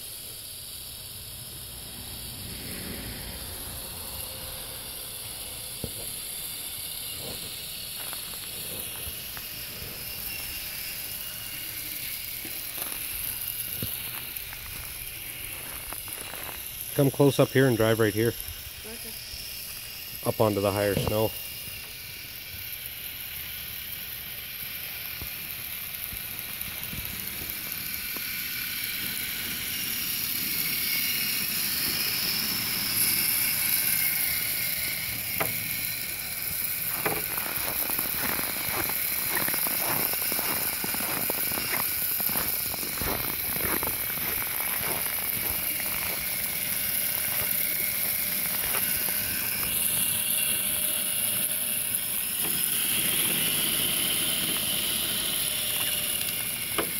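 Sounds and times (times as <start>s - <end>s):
electric motor whine: 0.0s - 56.9s
tracks clattering and clicking: 35.3s - 51.4s.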